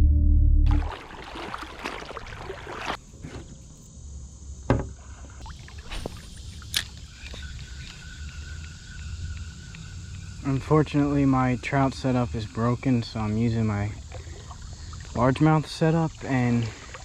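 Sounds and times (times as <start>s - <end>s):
loud low hum: 0.0s - 1.4s
water sloshing around wading legs: 0.7s - 3.1s, 5.4s - 7.0s, 13.8s - 17.0s.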